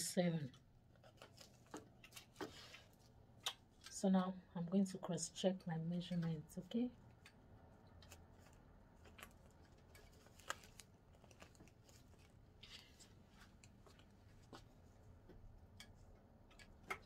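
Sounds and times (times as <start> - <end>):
low room hum: 0.0 - 17.0
faint clicks and rustles of handling: 0.4 - 4.2, 4.9 - 17.0.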